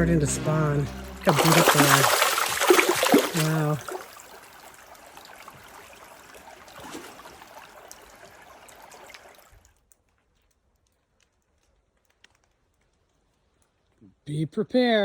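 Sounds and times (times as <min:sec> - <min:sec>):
river water flowing: 0:00.0 - 0:09.5.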